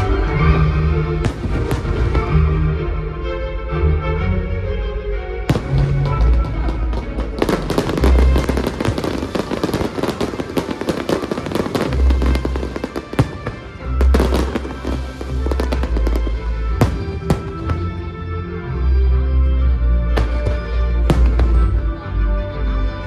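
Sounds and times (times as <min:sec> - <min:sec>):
music: 0:00.0 - 0:23.0
deep fireworks booms: 0:01.2 - 0:02.6, 0:05.5 - 0:18.0, 0:20.1 - 0:22.0
fireworks crackling: 0:05.5 - 0:18.0, 0:20.2 - 0:21.8.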